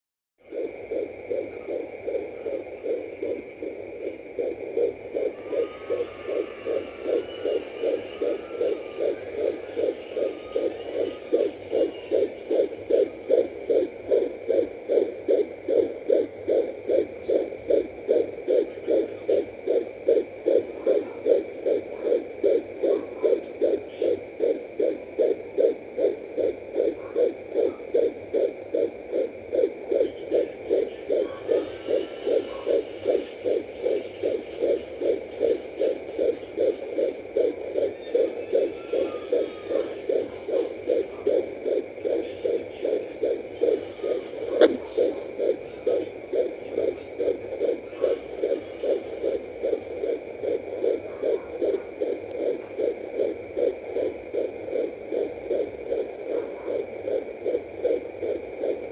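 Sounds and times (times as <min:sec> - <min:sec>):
fast heartbeat pulse: 0:00.4 - 0:58.9
faint steady high tone: 0:05.2 - 0:12.7, 0:37.6 - 0:41.2.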